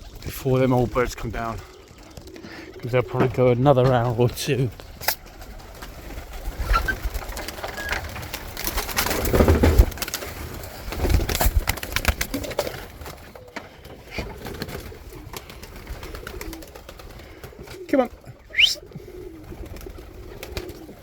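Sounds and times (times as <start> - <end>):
pigeons cooing: 0.0 - 21.0
clattering and knocking: 8.9 - 10.0.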